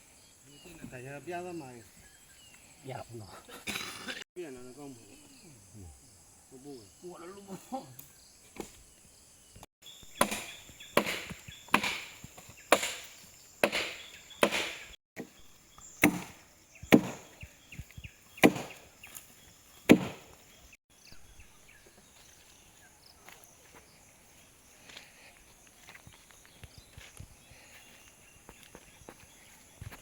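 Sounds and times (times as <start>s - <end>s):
blade chopping wood: 10.1s - 15.4s, 16.0s - 20.4s.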